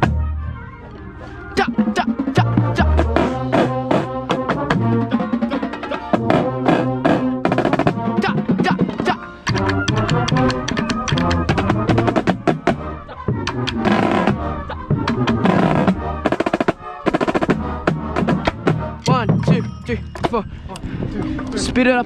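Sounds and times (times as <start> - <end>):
deeper drums: 0.0 - 22.0
sustained pitched instrument notes: 9.2 - 22.0
snare drum rolls: 9.5 - 14.4, 15.0 - 20.4.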